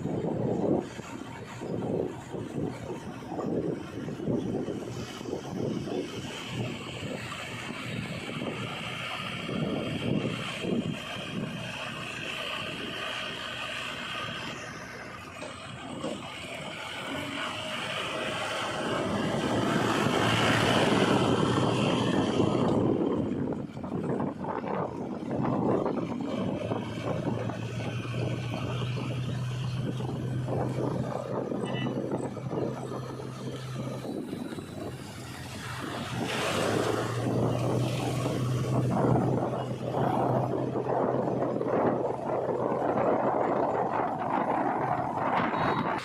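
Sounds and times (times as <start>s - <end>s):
loud rushing noise: 0.0s - 29.4s
heavy diesel engine running: 0.0s - 46.0s.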